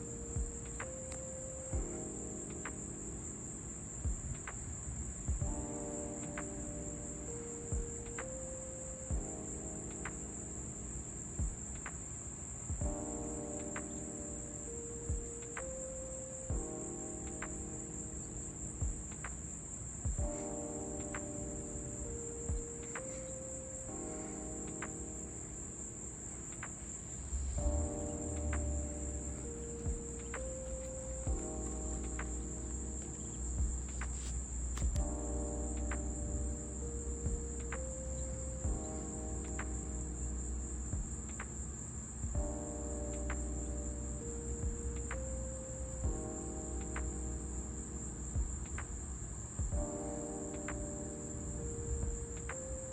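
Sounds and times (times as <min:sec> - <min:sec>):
crickets chirping: 0:00.0 - 0:52.9
low rumble: 0:27.2 - 0:30.3
sharp ticks: 0:27.8 - 0:36.3.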